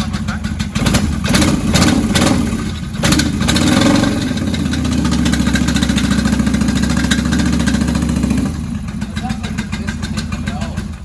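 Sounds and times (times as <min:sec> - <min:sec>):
motorcycle engine running: 0:00.0 - 0:11.0.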